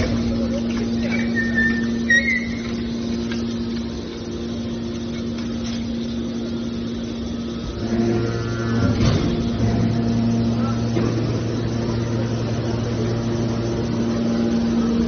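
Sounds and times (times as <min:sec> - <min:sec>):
baler machine humming: 0:00.0 - 0:15.0
short high squeals: 0:01.0 - 0:02.9.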